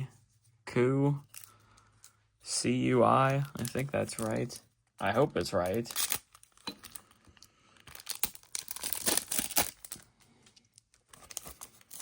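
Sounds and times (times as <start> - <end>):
foil wrapper crinkling: 7.7 - 10.1, 10.8 - 12.0.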